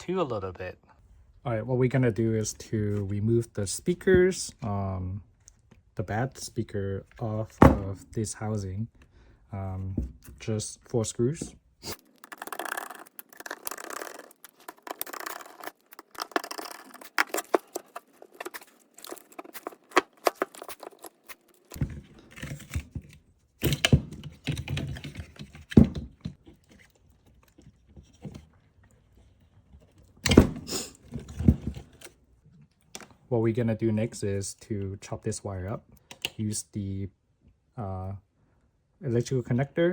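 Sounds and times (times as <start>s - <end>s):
screws clicking and clinking: 11.9s - 21.7s.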